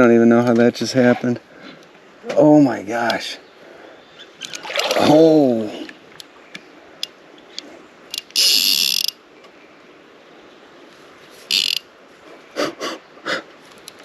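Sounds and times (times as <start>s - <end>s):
fishing reel drag buzzing: 8.1s - 9.2s, 11.5s - 11.9s.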